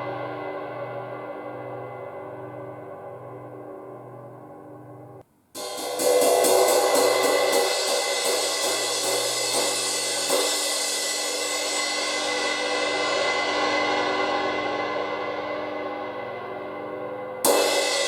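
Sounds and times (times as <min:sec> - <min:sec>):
cymbal struck with a stick: 0:05.6 - 0:18.0.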